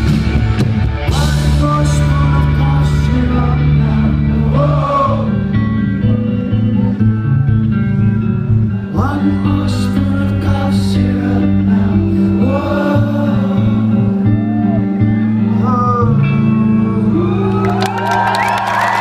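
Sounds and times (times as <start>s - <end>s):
rock band guitars and bass: 0.0s - 19.0s
man singing: 1.0s - 7.0s, 8.8s - 17.9s.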